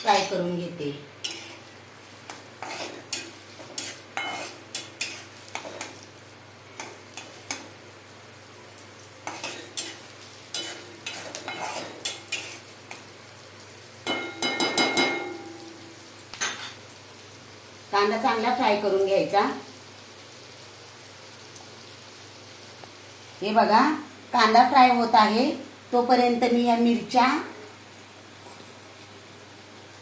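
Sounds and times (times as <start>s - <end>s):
spatula scraping a pan: 0.0s - 0.4s, 1.2s - 6.1s, 9.2s - 13.0s
onion sizzling in hot oil: 0.0s - 30.0s.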